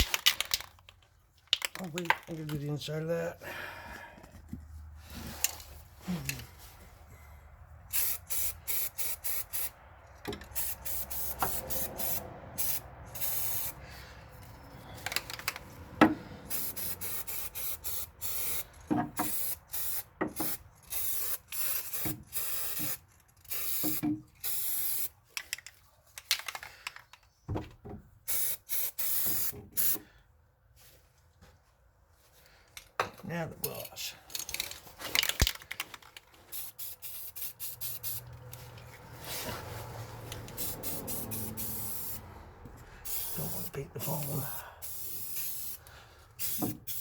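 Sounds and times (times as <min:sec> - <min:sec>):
spray paint can spraying: 0:07.9 - 0:09.8, 0:10.4 - 0:13.8, 0:16.5 - 0:25.2, 0:28.3 - 0:30.0, 0:36.5 - 0:38.7, 0:40.2 - 0:42.2, 0:43.0 - 0:47.0.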